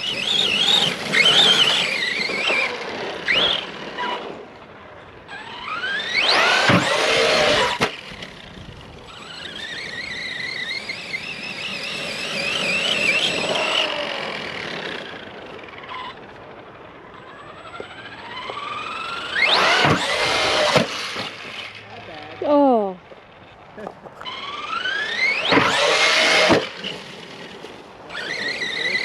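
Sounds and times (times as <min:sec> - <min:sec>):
toy truck electric motor whining: 0:00.0 - 0:04.5, 0:05.3 - 0:22.6, 0:24.1 - 0:29.0.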